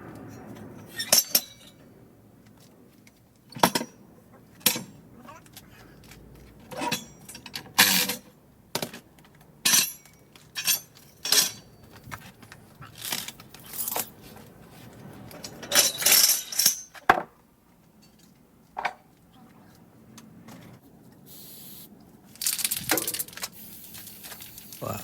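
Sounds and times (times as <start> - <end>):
metal parts clinking and clanking: 0.9 - 1.8, 5.5 - 9.0, 9.6 - 12.0, 13.0 - 14.2, 15.3 - 17.1, 22.3 - 25.0.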